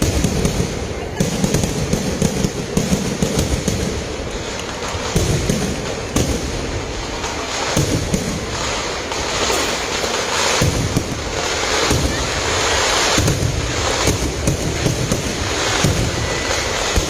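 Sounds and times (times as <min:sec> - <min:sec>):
fireworks crackling: 0:00.0 - 0:17.0
heavy firework booms: 0:00.0 - 0:17.0.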